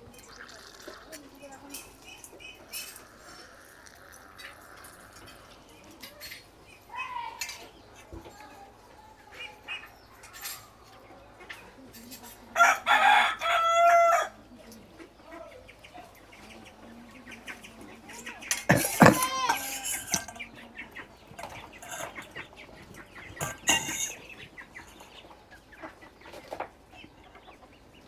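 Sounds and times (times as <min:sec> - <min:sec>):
rooster crowing: 0:12.6 - 0:14.4.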